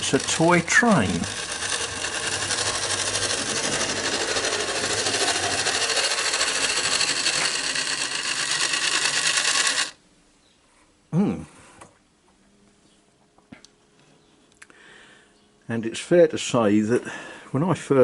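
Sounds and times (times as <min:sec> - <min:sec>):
toy train whirring rattle: 0:00.0 - 0:10.0.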